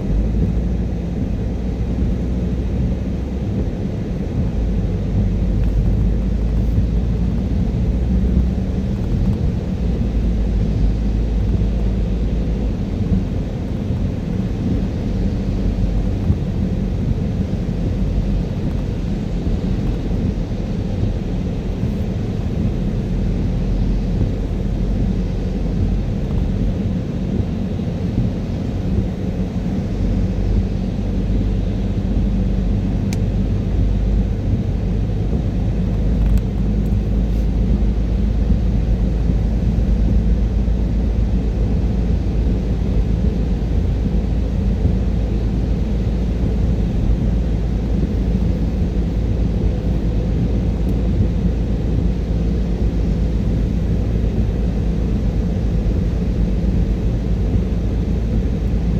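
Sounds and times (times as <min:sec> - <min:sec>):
car driving on wet road: 0:00.0 - 0:58.9.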